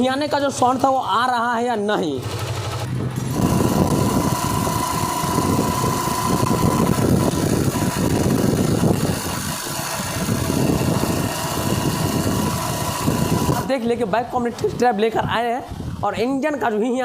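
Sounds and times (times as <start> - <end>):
motorcycle engine running: 2.2 - 13.7.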